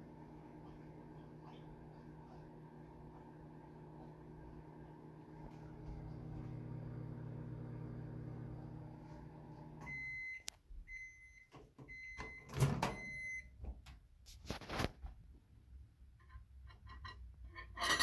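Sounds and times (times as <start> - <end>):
microwave oven humming: 0.0 - 13.9
microwave beeps: 9.7 - 13.6.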